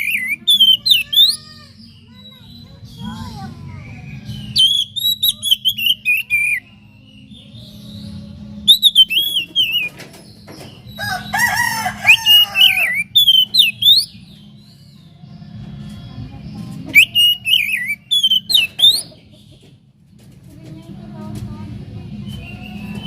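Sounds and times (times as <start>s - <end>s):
bird singing high whistles: 4.0s - 6.6s, 8.7s - 9.9s, 12.0s - 14.2s, 16.9s - 19.1s.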